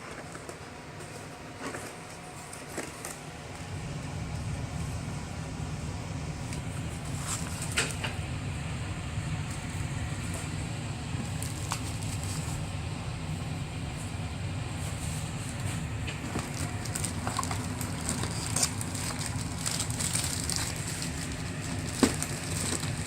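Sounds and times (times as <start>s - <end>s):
steady low hum: 0.0s - 23.0s
plastic and cardboard crackling: 6.4s - 8.3s, 9.4s - 12.9s, 14.8s - 23.0s.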